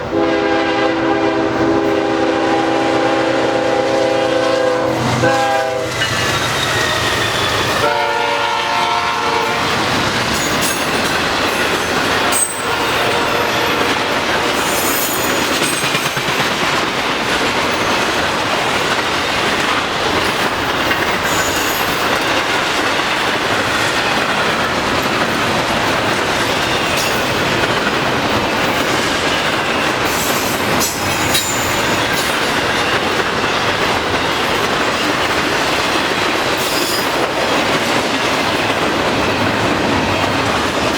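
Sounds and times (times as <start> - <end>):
train air horn: 0.0 - 6.2, 7.6 - 9.9, 12.2 - 15.1
high wheel squeals: 5.0 - 8.0, 11.5 - 16.0, 21.2 - 22.1
wheels clattering over rail joints: 5.1 - 8.7, 9.5 - 40.9.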